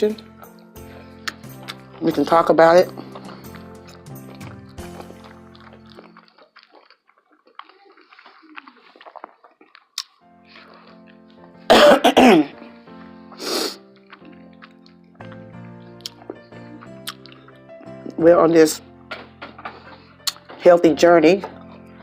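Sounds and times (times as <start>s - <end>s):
soft background music: 0.0s - 6.6s, 9.8s - 22.0s
person chewing: 0.2s - 11.8s, 12.5s - 18.2s, 18.9s - 20.6s, 21.5s - 22.0s
rough throat sound: 2.9s - 12.6s, 13.3s - 15.4s, 16.0s - 17.6s
person coughing: 11.7s - 12.6s.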